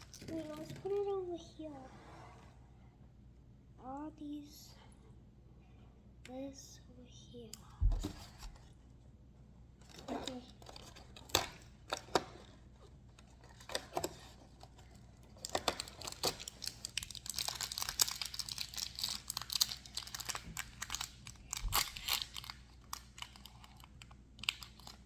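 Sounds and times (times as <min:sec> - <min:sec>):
packaging crinkling and tearing: 0:00.0 - 0:01.1, 0:09.8 - 0:12.5, 0:13.2 - 0:25.0.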